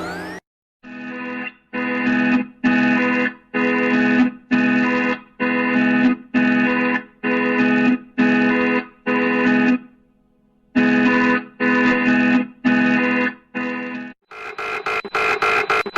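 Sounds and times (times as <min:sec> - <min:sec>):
electronic alarm chord beeping: 0:00.0 - 0:00.4.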